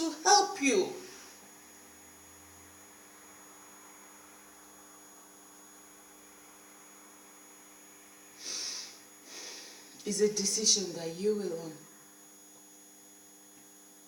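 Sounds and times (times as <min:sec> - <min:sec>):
faint electrical hum and hiss: 0:00.0 - 0:14.0
short breathy hiss: 0:08.3 - 0:10.0.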